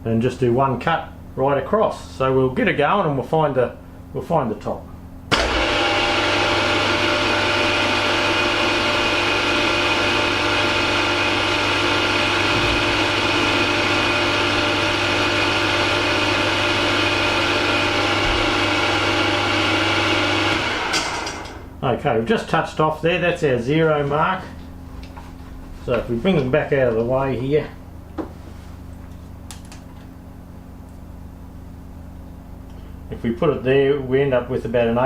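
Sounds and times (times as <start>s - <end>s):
milling machine spindle running: 5.3s - 21.7s.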